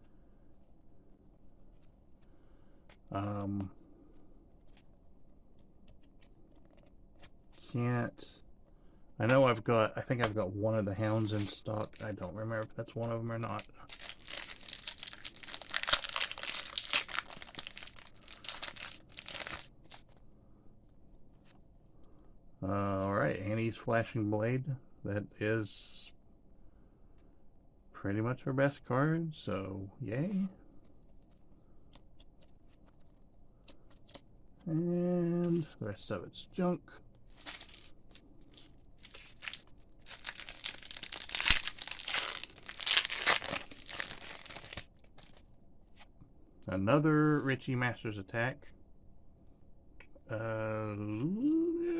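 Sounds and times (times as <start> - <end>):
wrapper crinkling: 13.4 - 20.2, 37.3 - 45.5
wrapper tearing open: 13.5 - 20.2, 37.3 - 45.5.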